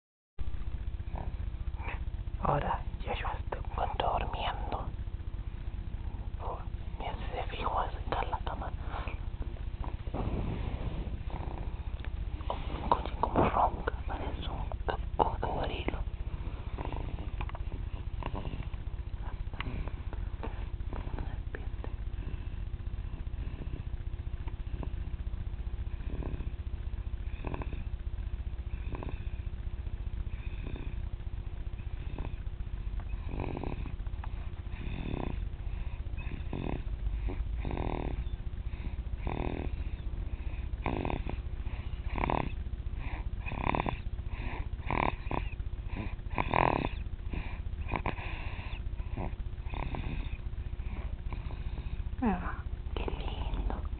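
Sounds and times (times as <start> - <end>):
faint steady hum: 0.4 - 53.9
baby snoring: 10.4 - 11.9, 16.7 - 17.4, 18.1 - 18.7, 25.9 - 26.6, 27.2 - 28.0, 28.7 - 29.4, 30.3 - 31.0, 33.1 - 34.0, 34.7 - 53.8.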